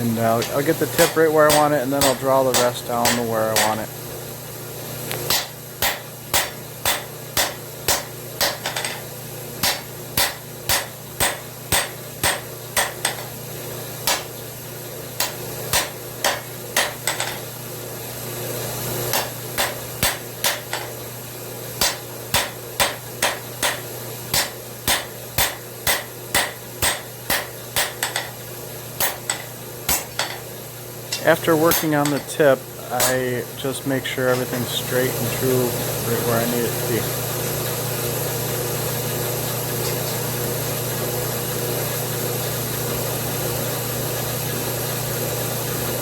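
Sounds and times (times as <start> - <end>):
steady low hum: 0.0 - 17.9, 18.7 - 38.4
hammer ringing on anvil: 1.0 - 3.8.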